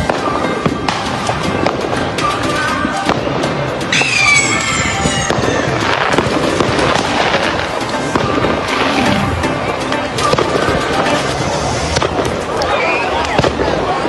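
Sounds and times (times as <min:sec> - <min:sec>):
fireworks crackling and popping: 0:00.0 - 0:14.0
whistling firework falling in pitch: 0:03.9 - 0:05.9.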